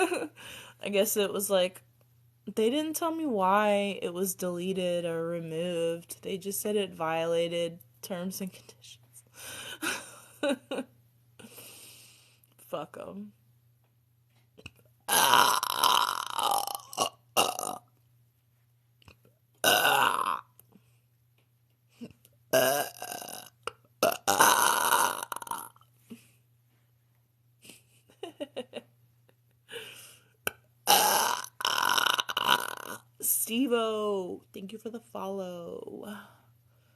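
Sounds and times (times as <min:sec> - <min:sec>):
woman burping loudly: 0:15.1 - 0:17.9, 0:19.6 - 0:20.5, 0:22.5 - 0:25.8, 0:30.8 - 0:33.1.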